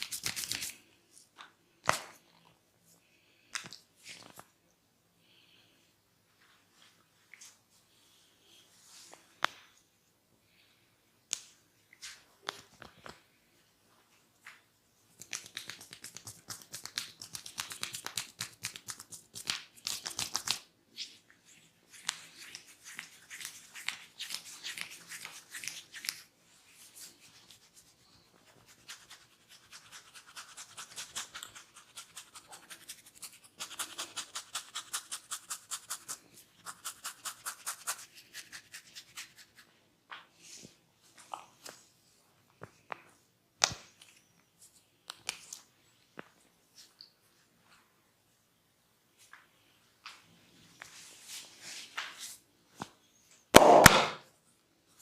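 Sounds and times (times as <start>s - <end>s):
hair crackling between fingers: 15.2s - 20.7s.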